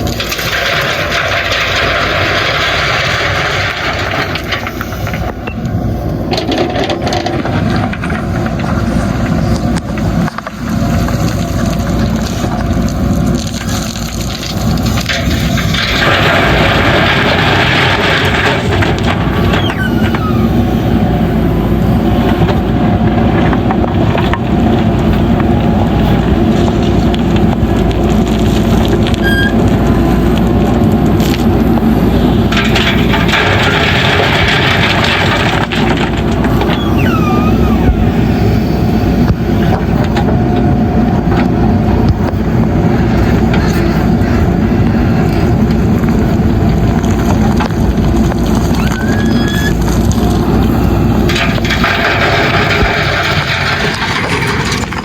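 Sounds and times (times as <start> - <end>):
knocks and rattles: 0.0 - 38.5, 39.1 - 55.0
diesel engine under load: 0.0 - 55.0
gravel and bucket clatter: 0.0 - 55.0
short falling squeal: 19.4 - 20.7, 29.2 - 29.6, 36.5 - 38.0, 48.8 - 49.8.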